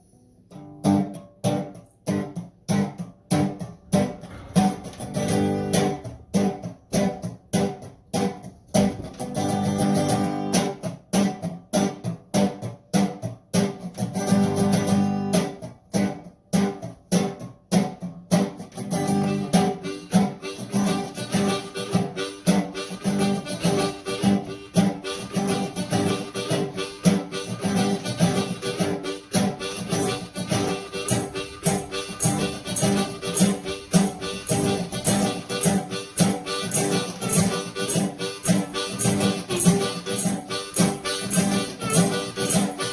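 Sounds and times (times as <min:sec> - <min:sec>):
resonator guitar picking: 0:00.5 - 0:42.9
harmonica: 0:18.8 - 0:42.9
foot tambourine beat: 0:20.4 - 0:42.9.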